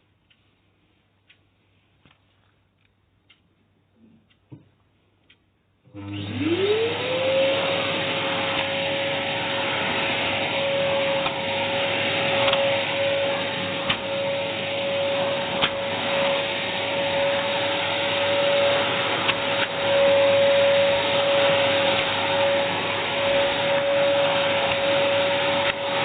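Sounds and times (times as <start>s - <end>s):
vacuum cleaner running: 5.9s - 26.0s.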